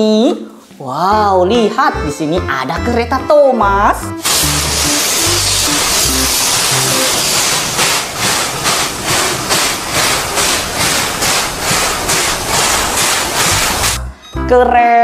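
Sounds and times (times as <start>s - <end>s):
steam locomotive chugging: 4.2s - 14.2s.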